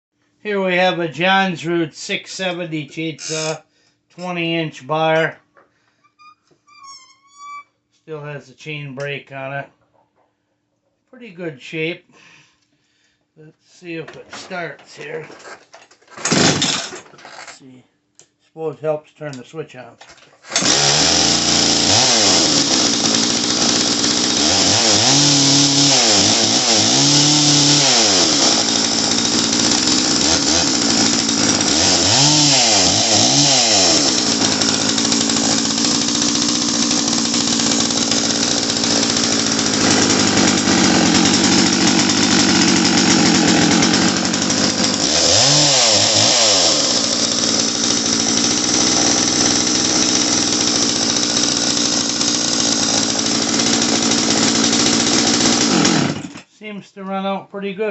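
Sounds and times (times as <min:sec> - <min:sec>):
chainsaw engine revving: 0:16.2 - 0:17.5, 0:20.5 - 0:56.4.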